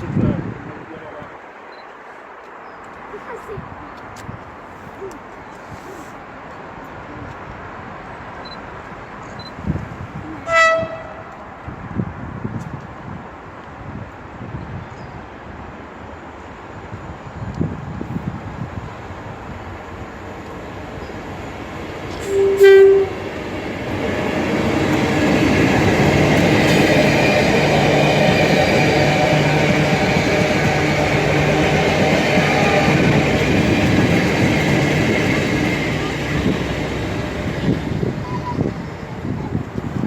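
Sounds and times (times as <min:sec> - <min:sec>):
train passing with loud rumble: 0:00.0 - 0:40.0
train horn blast: 0:10.4 - 0:11.4, 0:22.2 - 0:23.3.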